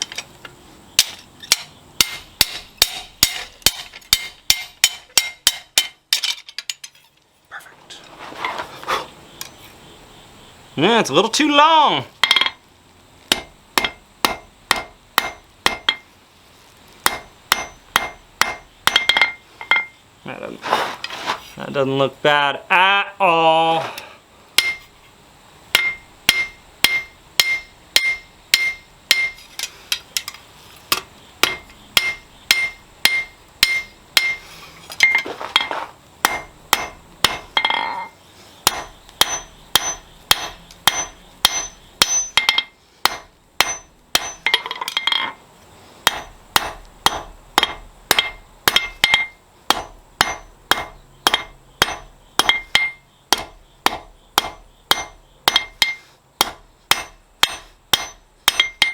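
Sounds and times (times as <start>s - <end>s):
hammer striking anvil: 1.0s - 6.4s, 13.3s - 16.0s, 17.0s - 19.9s, 24.6s - 24.9s, 25.8s - 29.4s, 30.9s - 34.4s, 35.0s - 38.1s, 38.7s - 45.4s, 46.1s - 58.9s
high anvil ring: 17.1s - 20.0s, 31.4s - 34.4s, 36.3s - 45.4s, 46.1s - 58.9s.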